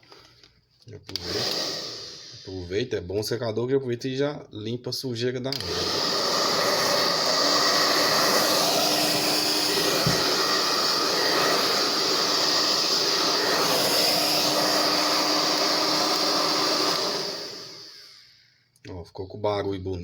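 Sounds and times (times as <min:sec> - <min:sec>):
hair dryer running: 0:01.1 - 0:02.6, 0:05.5 - 0:18.3.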